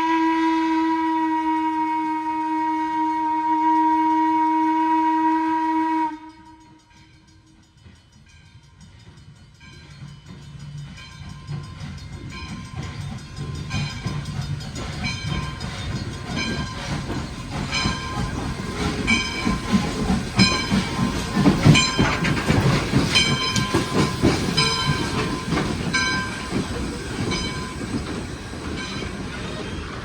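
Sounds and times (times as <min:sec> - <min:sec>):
steam locomotive rumbling: 0:00.0 - 0:30.0
locomotive bell ringing: 0:06.2 - 0:30.0.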